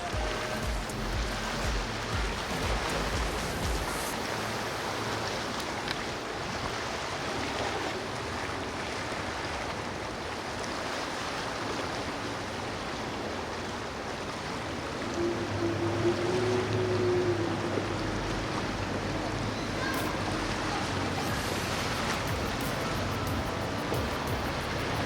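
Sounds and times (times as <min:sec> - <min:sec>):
rushing water and waves: 0:00.0 - 0:25.0.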